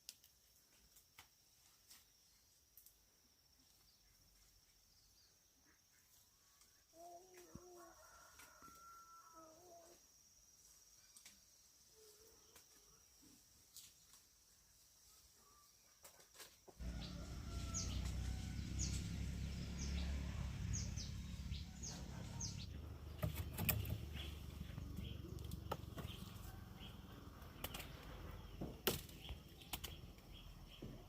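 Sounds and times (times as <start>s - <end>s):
low rumbling noise: 16.8s - 23.3s.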